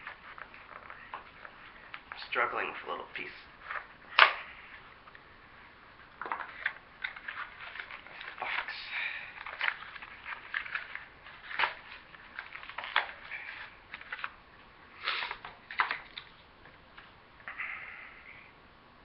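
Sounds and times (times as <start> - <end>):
cardboard packaging rustling: 0.0 - 17.2
sharp cardboard snaps: 3.7 - 4.6, 9.4 - 14.4.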